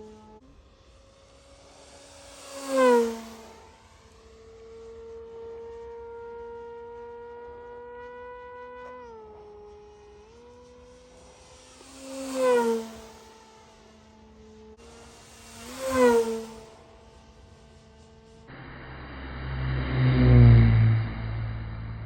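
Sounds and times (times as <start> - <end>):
model aircraft motor buzzing: 0.0 - 22.0.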